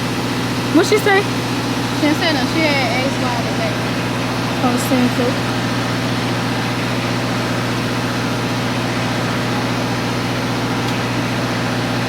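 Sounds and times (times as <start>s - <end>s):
low engine hum: 0.0s - 12.0s.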